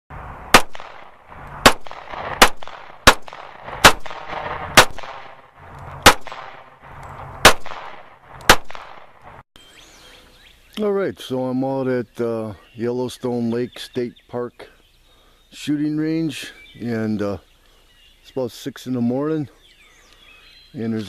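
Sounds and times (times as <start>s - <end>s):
gunshots with echo: 0.5s - 9.2s.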